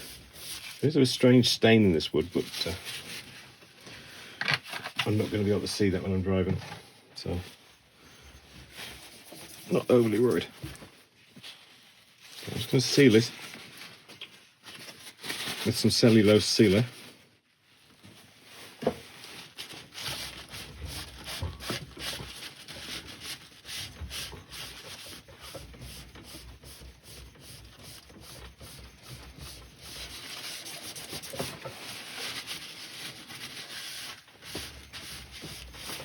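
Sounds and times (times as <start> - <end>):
cloth rubbing on wood: 19.4 - 36.0.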